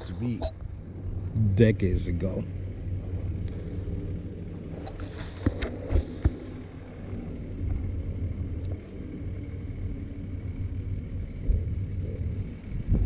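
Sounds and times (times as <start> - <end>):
wind on microphone: 12.7 - 13.0.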